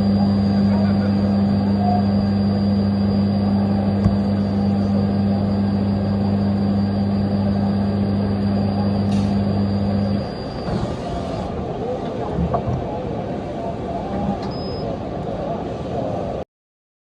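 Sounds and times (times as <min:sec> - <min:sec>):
faint high whine: 0:00.0 - 0:12.0
lathe low hum: 0:00.0 - 0:16.4
steady mechanical noise: 0:00.0 - 0:16.4.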